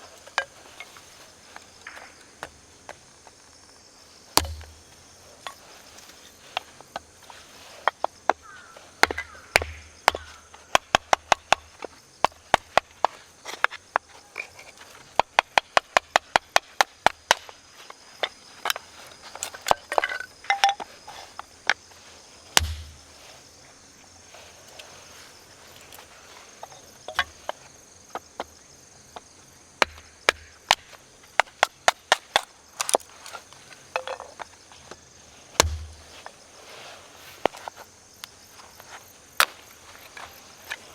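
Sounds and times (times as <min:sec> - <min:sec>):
insects chirping: 0:00.0 - 0:40.9
wooden knocks of chopping firewood: 0:00.2 - 0:03.7, 0:04.3 - 0:23.2, 0:25.7 - 0:36.4
dull thumps: 0:04.3 - 0:14.2, 0:14.8 - 0:23.4, 0:24.3 - 0:32.5, 0:33.9 - 0:37.8.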